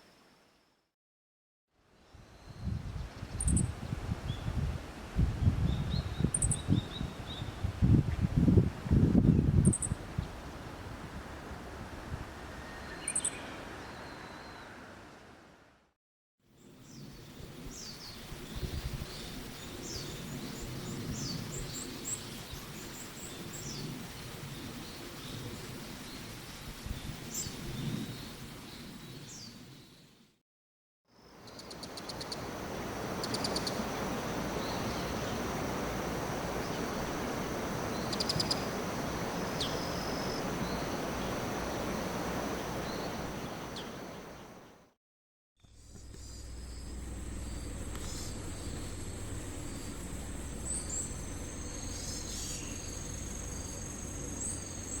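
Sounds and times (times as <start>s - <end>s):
steady hiss: 31.4s - 44.6s, 45.7s - 55.0s
high downward sliding bird calls: 31.5s - 44.0s.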